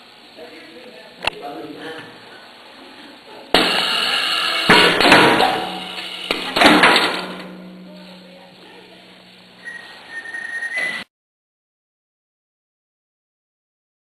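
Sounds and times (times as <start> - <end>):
loud mechanical machine bursts: 3.6 - 7.5.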